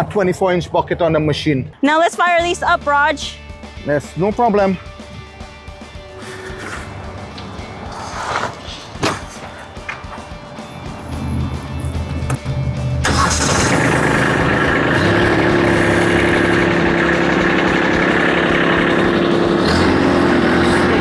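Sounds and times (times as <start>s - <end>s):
diesel engine starting and running: 6.0s - 8.6s, 9.6s - 21.0s.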